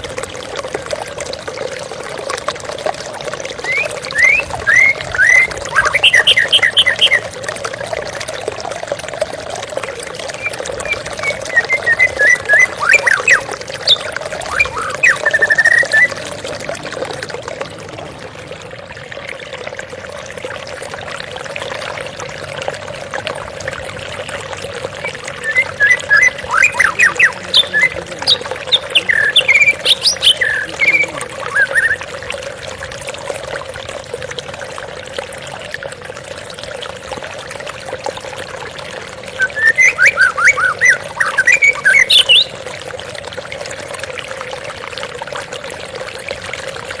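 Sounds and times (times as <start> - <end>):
water flowing: 0.0 - 47.0
bird chirps and trills: 3.6 - 7.4, 10.2 - 16.5, 24.3 - 32.1, 39.3 - 42.6.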